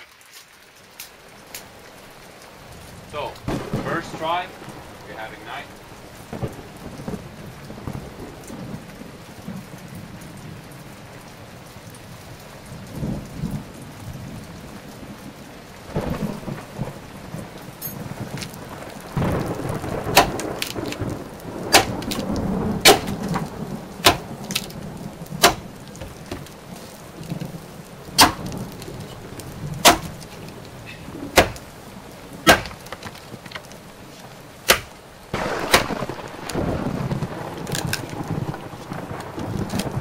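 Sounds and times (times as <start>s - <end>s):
axe chopping wood: 20.2s - 20.8s, 21.7s - 22.2s, 22.8s - 23.4s, 24.0s - 24.7s, 25.4s - 25.7s, 28.2s - 28.6s, 29.8s - 30.2s, 31.4s - 31.7s, 32.5s - 33.2s, 34.7s - 34.9s.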